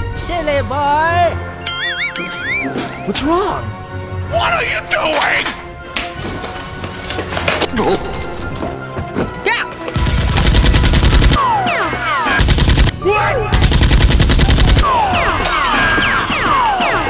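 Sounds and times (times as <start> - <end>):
automatic gunfire bursts: 13.6 - 14.8.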